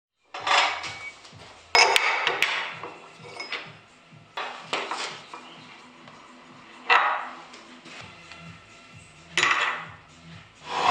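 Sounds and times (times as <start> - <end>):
quiet background music with bass: 0.2 - 10.9
metallic clinks and clattering: 0.3 - 4.5.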